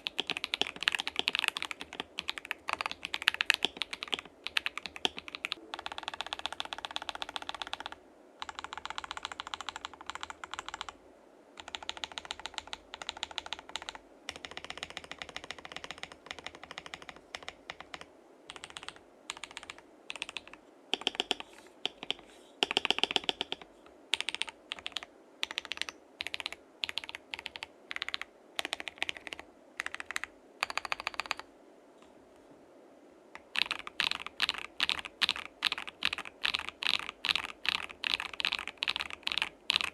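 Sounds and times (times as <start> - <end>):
keyboard keys clacking: 0.0 - 10.9.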